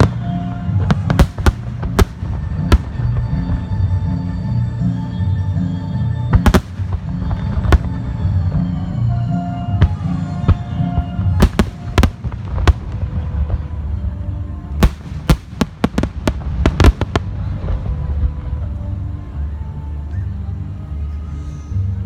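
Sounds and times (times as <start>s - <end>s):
fireworks bursting in bangs: 0.0s - 3.8s, 6.3s - 8.8s, 9.7s - 13.8s, 14.8s - 18.4s
loud background music: 0.0s - 22.0s.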